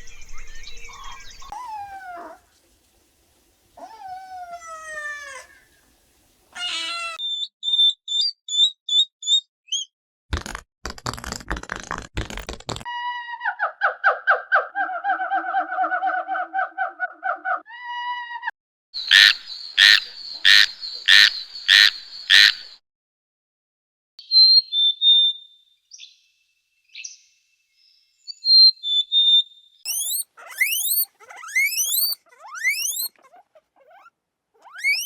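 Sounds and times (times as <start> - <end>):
short high chirps: 29.9 - 31.0
short pitched animal call: 29.9 - 33.2, 33.9 - 35.0
loud animal call pulses: 29.9 - 35.0.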